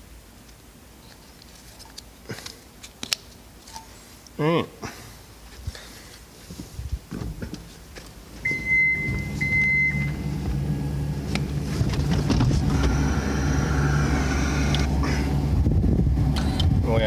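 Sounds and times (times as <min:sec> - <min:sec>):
diesel engine starting and running: 0:08.2 - 0:17.0
short high beeps: 0:08.5 - 0:10.3.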